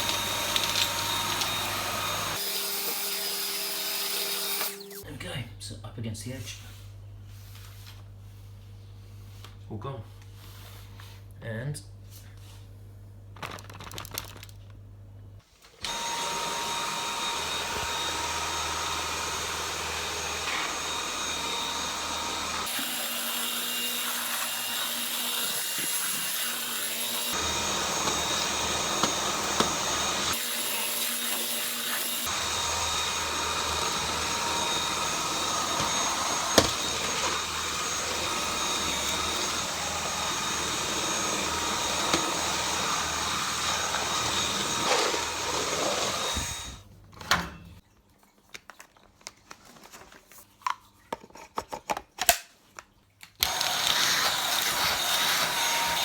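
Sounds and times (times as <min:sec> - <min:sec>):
vacuum cleaner motor whine: 0:00.0 - 0:05.0, 0:15.8 - 0:46.8, 0:53.4 - 0:56.0.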